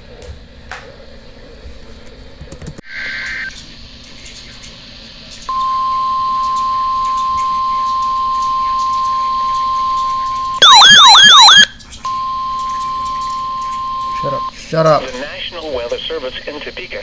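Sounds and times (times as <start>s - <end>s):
loud siren-like sweeping sound: 5.5s - 14.5s
steady pure alarm tone: 5.5s - 14.5s.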